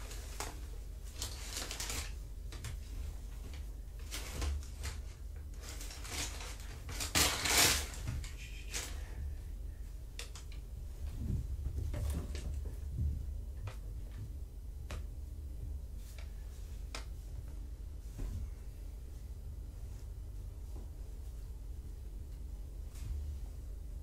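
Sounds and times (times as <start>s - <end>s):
paper rustling and crinkling: 0.0s - 9.3s
steady low hum: 0.0s - 24.0s.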